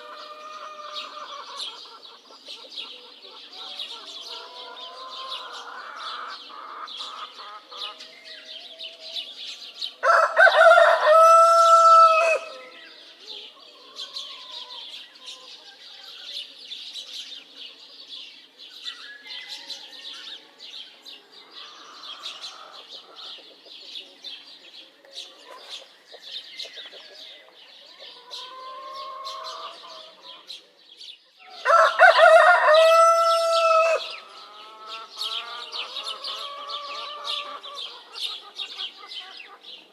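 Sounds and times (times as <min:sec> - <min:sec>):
hen clucking: 0:00.0 - 0:08.1, 0:21.6 - 0:24.2, 0:26.2 - 0:30.5, 0:31.7 - 0:39.9
small birds chirping: 0:00.0 - 0:39.9
rooster crowing: 0:10.0 - 0:12.7, 0:31.5 - 0:37.6.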